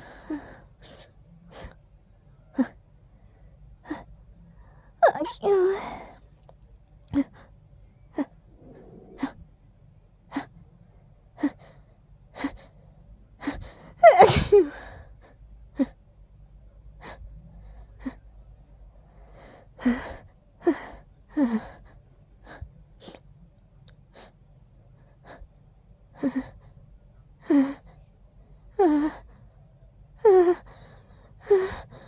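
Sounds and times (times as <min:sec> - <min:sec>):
person sneezing: 0:14.0 - 0:14.8.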